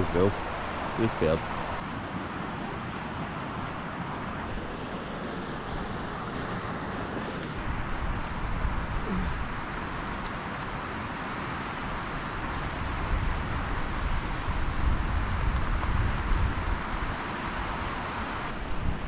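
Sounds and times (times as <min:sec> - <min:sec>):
wind on microphone: 0:04.4 - 0:10.2, 0:11.9 - 0:19.0.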